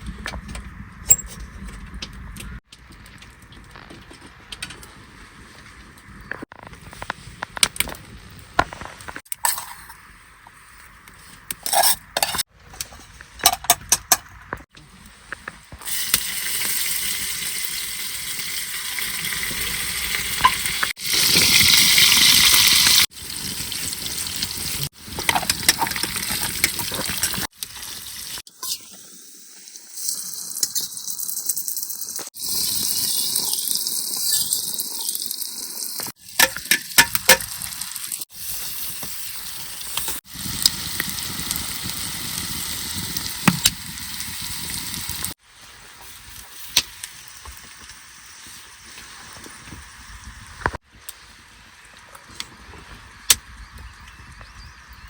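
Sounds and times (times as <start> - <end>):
stirring and scraping: 11.1 - 13.3, 24.8 - 27.9
food sizzling: 15.8 - 50.8.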